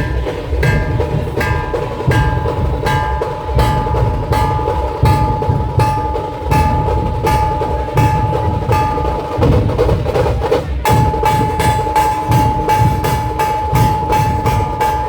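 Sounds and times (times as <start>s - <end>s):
metallic ringing tone: 0.0s - 10.2s, 10.9s - 15.0s
deep drum beats: 0.0s - 15.0s
sharp rapid drum strokes: 0.0s - 15.0s.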